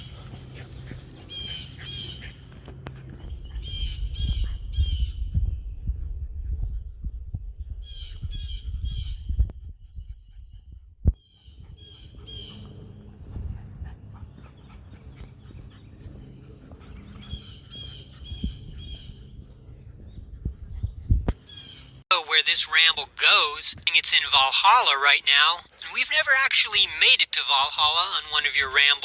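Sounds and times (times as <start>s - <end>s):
low rumble on microphone: 0.0s - 22.0s.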